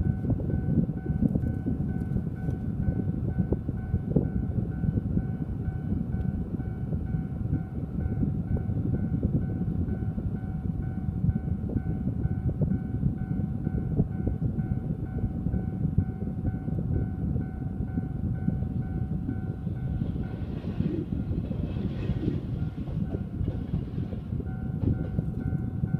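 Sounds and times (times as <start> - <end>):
level crossing warning bell: 0.0 - 25.9
low rumble: 0.0 - 25.9
approaching train hiss and rumble: 18.6 - 25.3.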